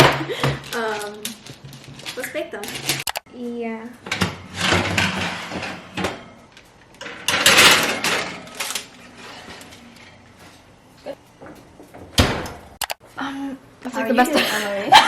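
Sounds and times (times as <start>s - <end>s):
cookie sheet scraping: 4.3s - 6.3s.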